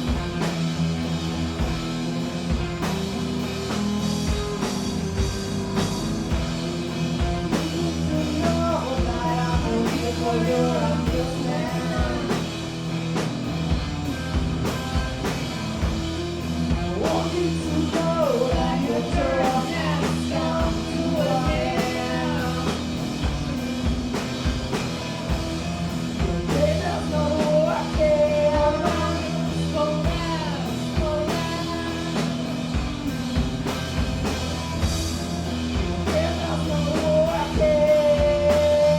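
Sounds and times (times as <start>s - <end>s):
punk rock band playing: 0.0s - 38.9s
person singing: 7.5s - 12.6s, 16.9s - 23.3s, 26.4s - 32.6s, 36.0s - 38.9s.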